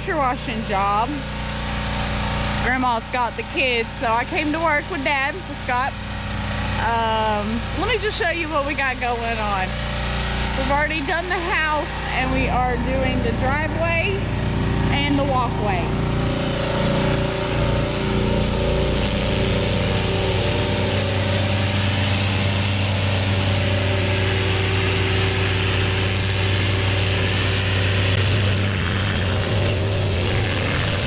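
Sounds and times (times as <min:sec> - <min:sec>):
pressure washer hiss: 0:00.0 - 0:13.4, 0:14.1 - 0:31.0
pressure washer engine hum: 0:00.0 - 0:31.0.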